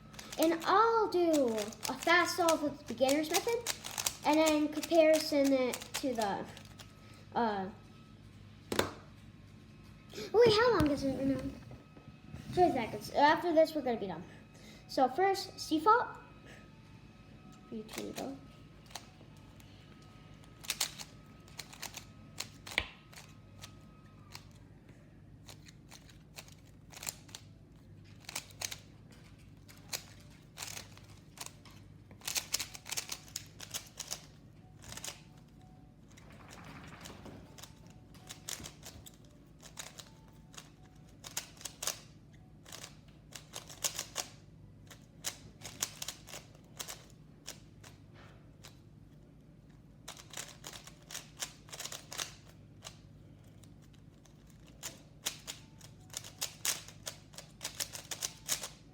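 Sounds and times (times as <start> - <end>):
puzzle cube layers clicking: 1.3 - 6.8, 37.5 - 42.0, 42.6 - 44.4, 45.2 - 47.6.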